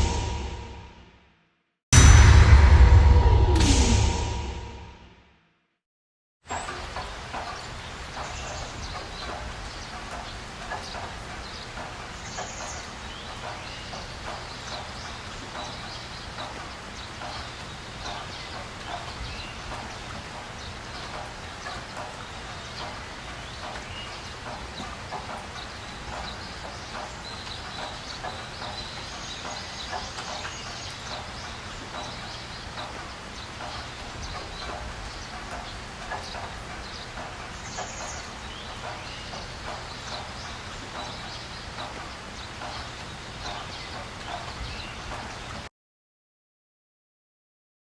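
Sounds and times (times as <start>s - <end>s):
bird chirps and ticks: 6.5s - 45.7s
steady background noise: 6.5s - 45.7s.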